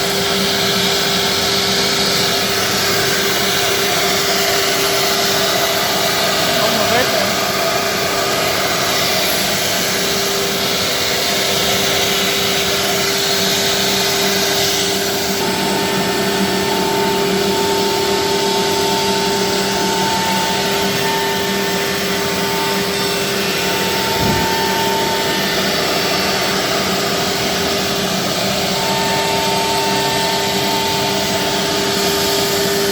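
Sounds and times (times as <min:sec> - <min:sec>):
wood router whining: 0:00.0 - 0:32.9
higher machine tone: 0:19.7 - 0:32.2.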